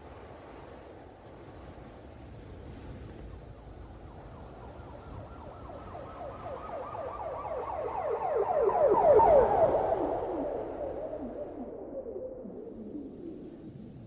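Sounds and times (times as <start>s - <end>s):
low road rumble: 1.3s - 14.0s
police siren yelping: 4.1s - 13.8s.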